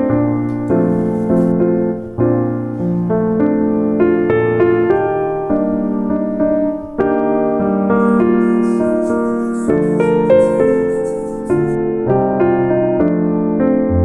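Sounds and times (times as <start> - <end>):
calm solo piano music: 0.0 - 11.8.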